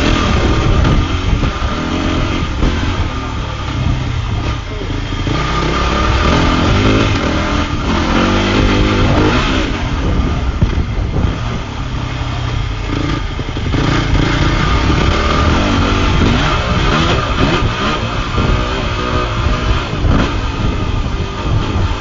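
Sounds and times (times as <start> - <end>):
dirt bike engine revving: 0.0 - 22.0.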